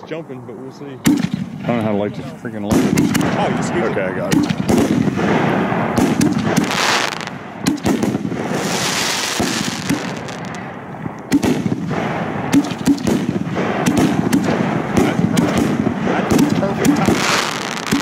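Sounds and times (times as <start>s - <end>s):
fireworks crackling and popping: 2.7s - 18.0s
fireworks hissing: 6.4s - 7.3s, 8.0s - 10.6s, 16.6s - 18.0s.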